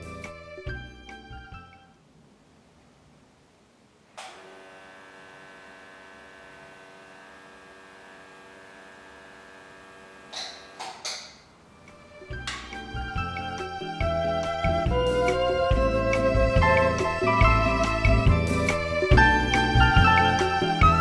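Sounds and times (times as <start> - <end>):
air compressor humming: 4.2 - 11.3.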